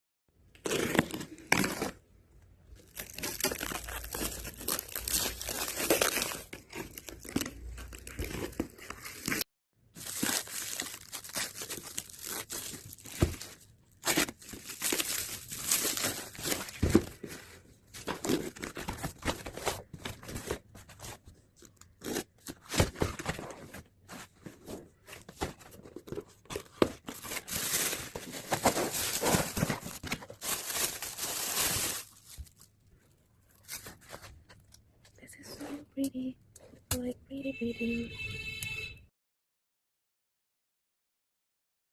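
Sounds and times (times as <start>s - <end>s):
packaging crinkling and tearing: 0.5s - 2.0s, 2.7s - 9.4s, 10.0s - 34.8s.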